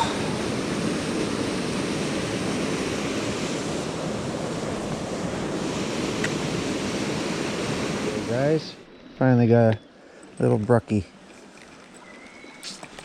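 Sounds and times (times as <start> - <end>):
creek water rushing: 0.0 - 8.9.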